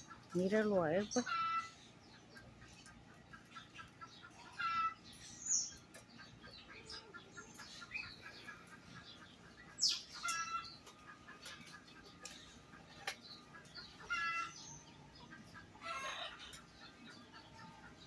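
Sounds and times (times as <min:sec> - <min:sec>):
small bird chirps: 0:00.0 - 0:18.0
bird squawking calls: 0:13.5 - 0:17.7.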